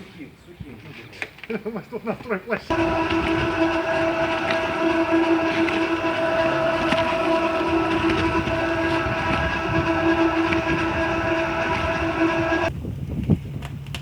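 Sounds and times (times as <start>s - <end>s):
machine humming and rattling: 2.7s - 12.7s.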